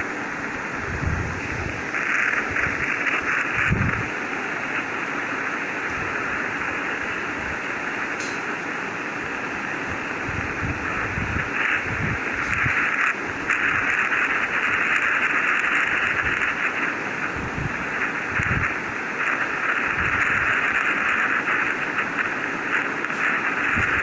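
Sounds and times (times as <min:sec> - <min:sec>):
static-like hiss: 0:00.0 - 0:24.0.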